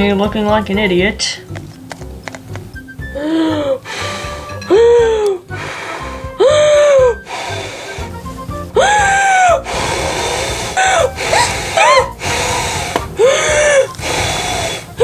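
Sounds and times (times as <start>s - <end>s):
person huffing and blowing: 3.0s - 15.0s.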